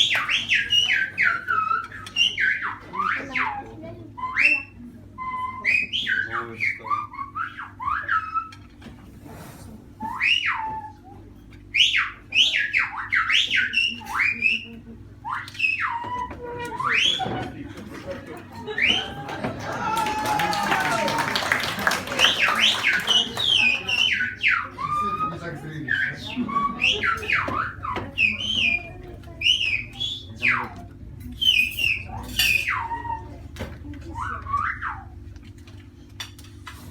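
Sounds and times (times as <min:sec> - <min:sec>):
person whistling speech: 0:00.1 - 0:08.5, 0:10.1 - 0:17.5, 0:19.9 - 0:35.2
person whistling sliding notes: 0:20.4 - 0:30.7.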